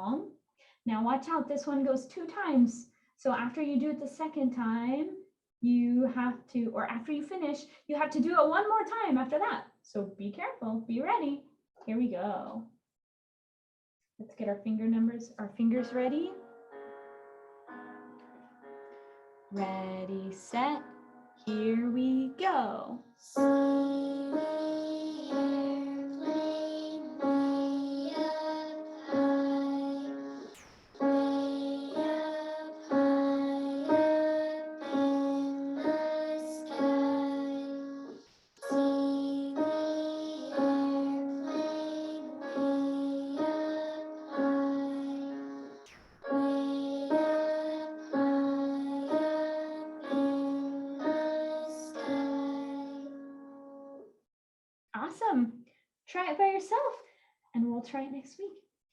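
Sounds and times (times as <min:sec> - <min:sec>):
simple piano tune: 0:15.7 - 0:54.2
recorded music accompaniment: 0:17.7 - 0:53.8.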